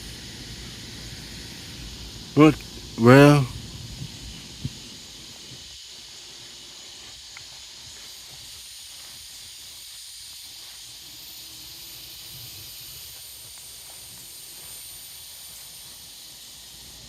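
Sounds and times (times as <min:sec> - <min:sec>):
faint steady high tones: 0:00.0 - 0:08.1
high-pitched outdoor hiss: 0:00.0 - 0:17.0.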